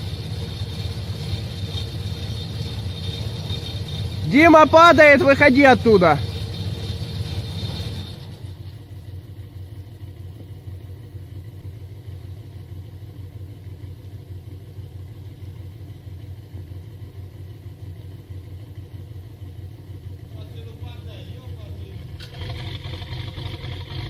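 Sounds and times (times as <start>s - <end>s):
heavy vehicle engine running: 0.0s - 24.0s.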